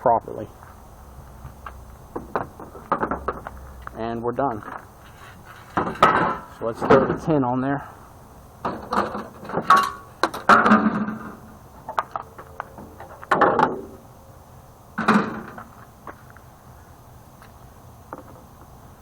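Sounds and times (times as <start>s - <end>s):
sheet metal clanking and rattling: 5.6s - 7.3s, 8.6s - 11.4s, 15.0s - 15.7s.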